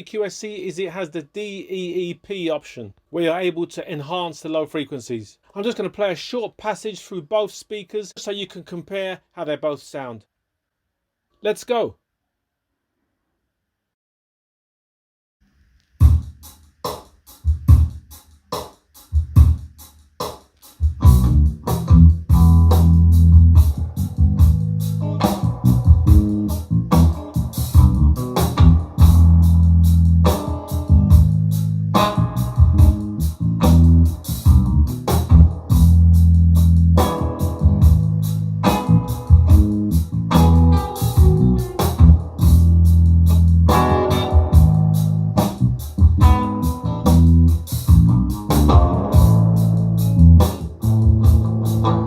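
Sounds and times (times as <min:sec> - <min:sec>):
guitar music with bass and drums: 0:20.8 - 0:52.0.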